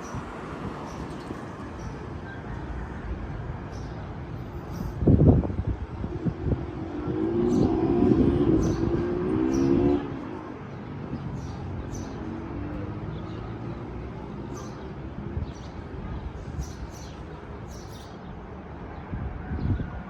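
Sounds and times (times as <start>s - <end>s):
rumbling wind: 0.0s - 13.2s.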